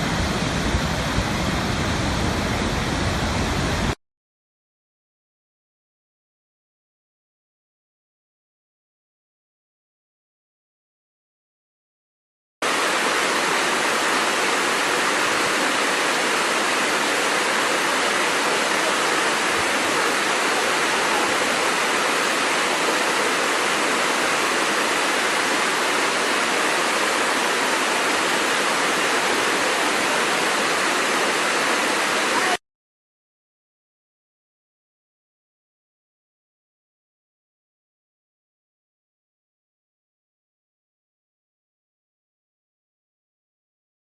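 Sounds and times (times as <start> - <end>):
waterfall rushing: 0.0 - 4.0, 12.6 - 32.6.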